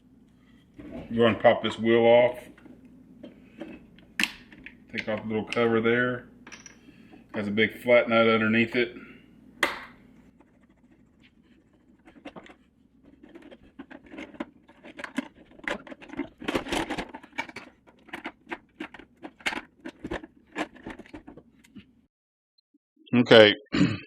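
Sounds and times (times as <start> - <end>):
tool clicking and scraping plastic: 10.3 - 21.8.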